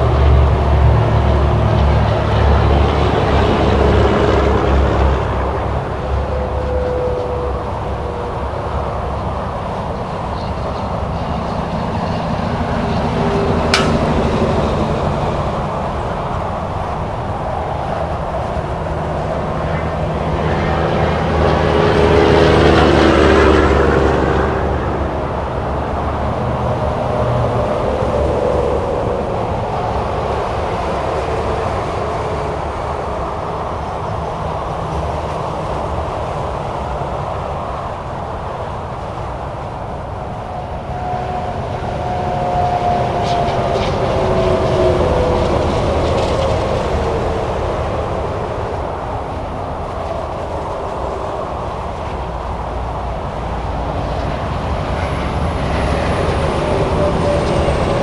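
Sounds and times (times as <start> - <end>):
highway traffic passing: 0.0 - 58.0
sharp click: 13.8 - 14.5.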